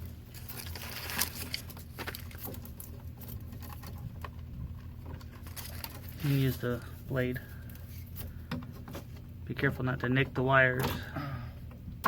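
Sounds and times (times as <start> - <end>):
paper rustling and crinkling: 0.0 - 4.4, 5.0 - 9.2
steady low hum: 0.0 - 12.0.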